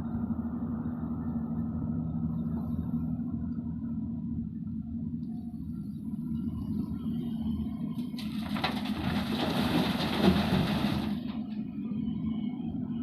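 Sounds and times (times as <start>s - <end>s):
diesel engine running: 0.0s - 13.0s.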